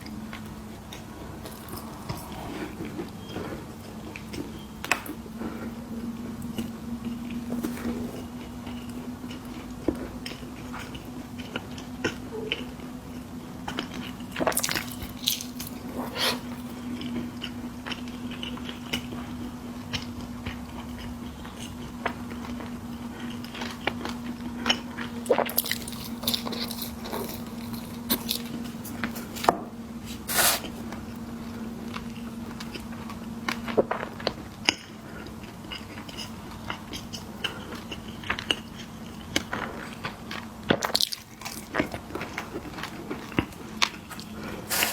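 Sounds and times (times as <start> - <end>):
low hum: 0.0 - 18.6
chewing snacks: 6.5 - 29.5, 31.8 - 44.9.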